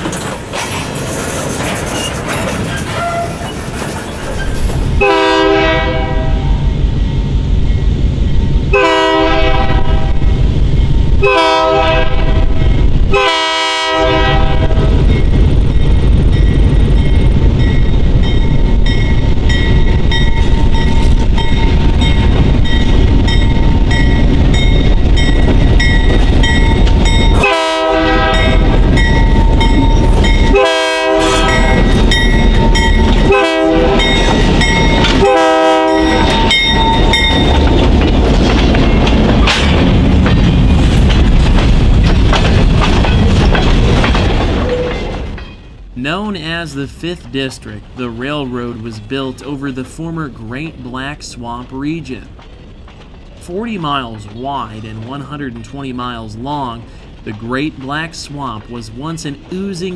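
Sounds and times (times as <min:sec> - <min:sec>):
freight train rumbling: 0:00.0 - 0:59.9
train horn blasts: 0:05.0 - 0:06.6, 0:08.7 - 0:10.3, 0:11.2 - 0:15.0, 0:27.4 - 0:28.7, 0:30.4 - 0:31.9, 0:33.2 - 0:34.3, 0:35.2 - 0:36.6.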